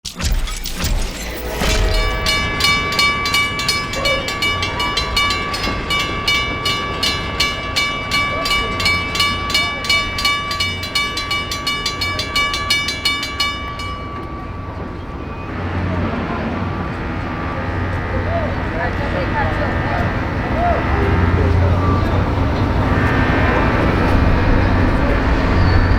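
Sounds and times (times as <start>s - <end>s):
low rumble: 0.2s - 6.0s
railroad crossing bell ringing: 1.4s - 25.9s.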